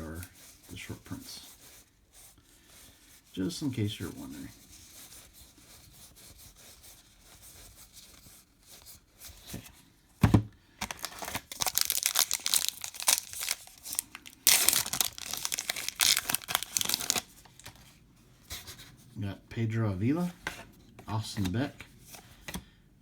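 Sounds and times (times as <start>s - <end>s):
wrapper tearing and crinkling: 10.8s - 17.8s.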